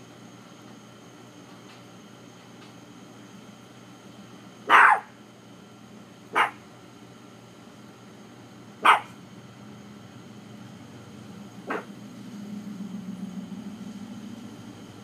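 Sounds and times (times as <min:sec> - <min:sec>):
faint steady hum: 0:00.0 - 0:15.0
dog barking: 0:04.6 - 0:05.2, 0:06.3 - 0:06.6, 0:08.8 - 0:09.2, 0:11.6 - 0:11.9.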